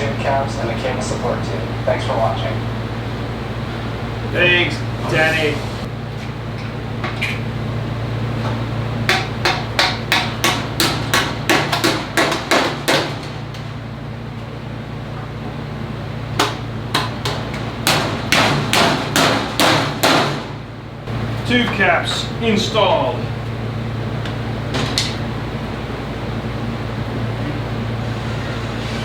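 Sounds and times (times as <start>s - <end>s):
hammer tapping on metal: 9.1s - 13.2s.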